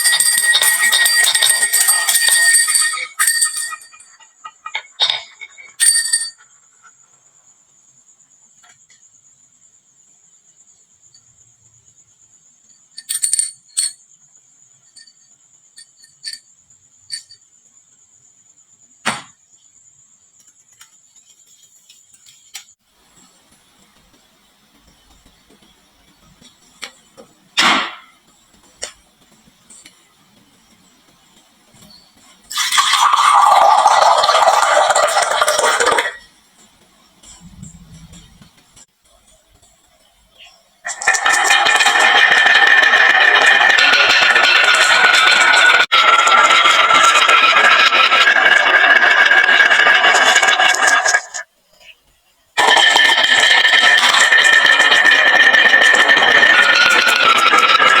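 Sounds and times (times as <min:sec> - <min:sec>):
marbles clattering down wooden run: 0:00.0 - 0:06.3, 0:32.5 - 0:36.2, 0:40.9 - 0:51.4, 0:52.6 - 0:58.0
faint high whine: 0:23.0 - 0:40.8.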